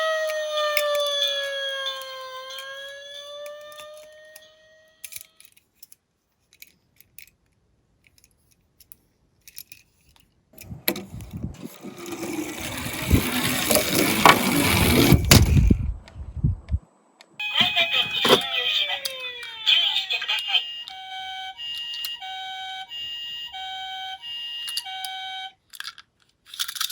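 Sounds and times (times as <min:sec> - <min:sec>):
toy siren wail: 0:00.0 - 0:05.4, 0:17.4 - 0:25.6
toy car rattling down a slope: 0:11.6 - 0:15.7, 0:25.6 - 0:26.9.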